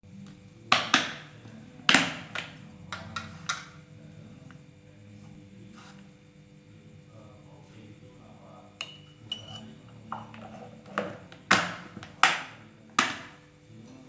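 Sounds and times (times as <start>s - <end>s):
faint background music: 0.0s - 14.0s
glassware and utensils clinking: 8.8s - 12.4s.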